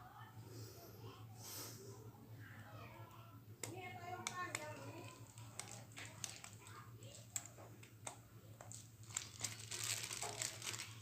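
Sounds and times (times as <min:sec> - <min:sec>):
plastic packaging crinkling: 0:04.4 - 0:07.6, 0:08.6 - 0:11.0.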